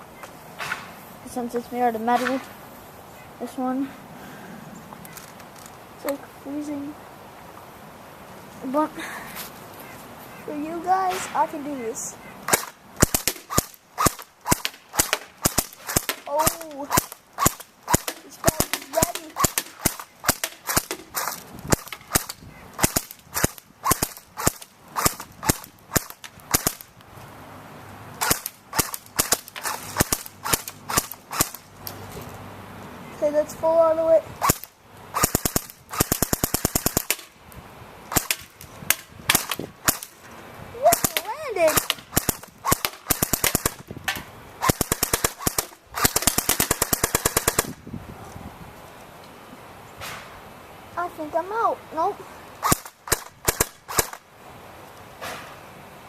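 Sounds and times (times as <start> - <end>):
airsoft gun single shots: 12.5 - 26.9, 28.2 - 31.6, 34.4 - 37.3, 38.1 - 40.1, 52.6 - 54.2.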